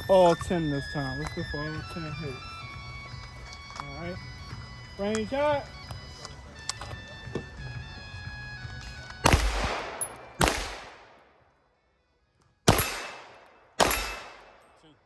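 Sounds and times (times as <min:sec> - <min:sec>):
pistol shots with echo: 0:09.2 - 0:11.4, 0:12.7 - 0:14.8.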